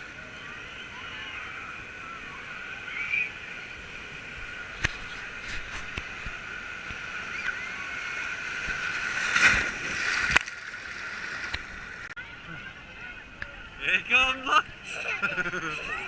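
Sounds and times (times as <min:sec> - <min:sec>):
busy water park background: 0:00.0 - 0:16.0
water sloshing and gurgling: 0:02.6 - 0:12.9.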